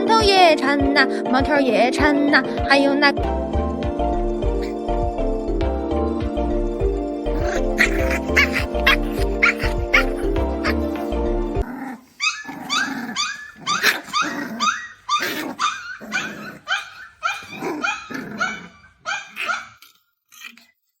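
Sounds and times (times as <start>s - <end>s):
background music: 0.0s - 11.7s
puppy barking: 7.3s - 11.1s, 12.2s - 19.8s.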